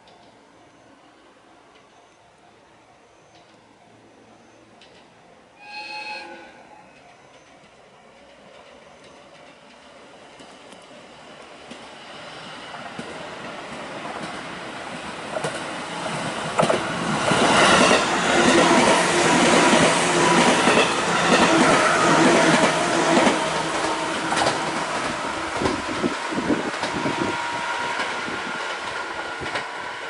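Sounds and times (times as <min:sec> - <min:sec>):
electric train passing: 0:00.0 - 0:30.0
wheels clicking over rail joints: 0:12.7 - 0:27.2, 0:27.9 - 0:29.8.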